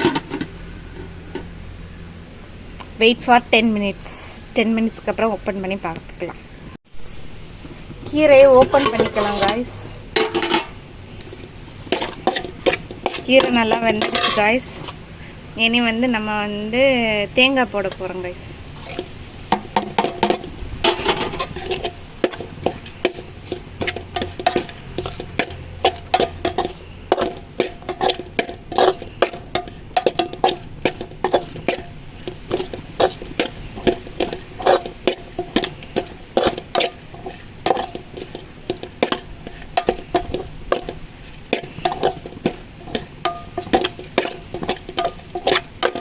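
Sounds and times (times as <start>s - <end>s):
metal spoon scraping a pan: 0.0s - 1.5s, 8.2s - 15.1s, 17.7s - 46.0s.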